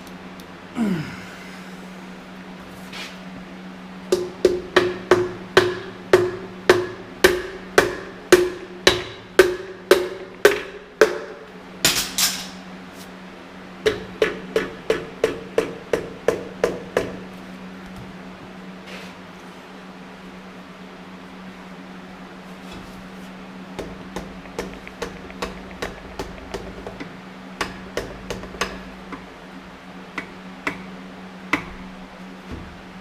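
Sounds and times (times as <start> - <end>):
hammer tapping: 23.8 - 29.2.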